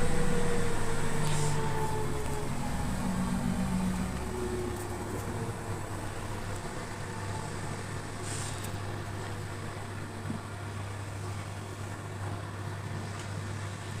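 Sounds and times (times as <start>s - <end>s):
washing machine running: 0.0s - 14.0s.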